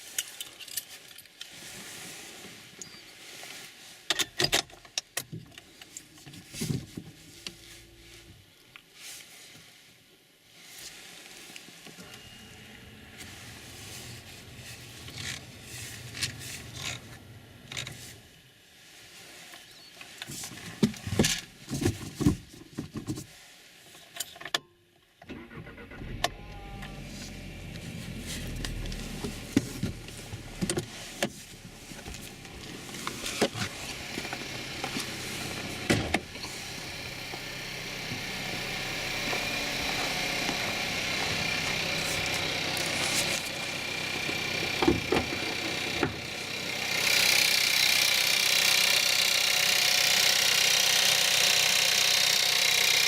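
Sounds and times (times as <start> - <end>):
car engine rattling at idle: 12.1 - 18.2, 25.3 - 53.0.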